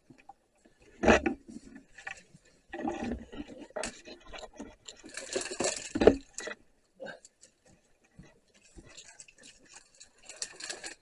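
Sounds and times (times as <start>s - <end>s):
wood scraping and knocking: 0.9s - 6.6s.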